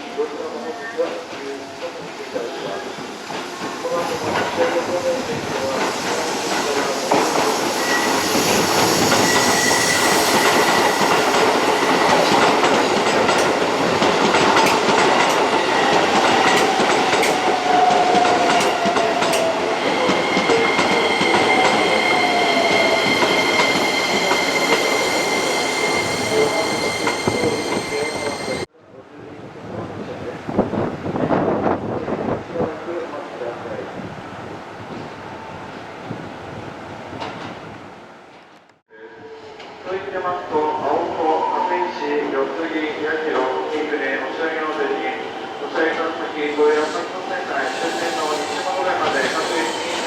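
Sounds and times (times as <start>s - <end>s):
electric train rumbling: 1.2s - 28.7s, 42.3s - 50.0s
wheel squeal: 7.3s - 11.1s.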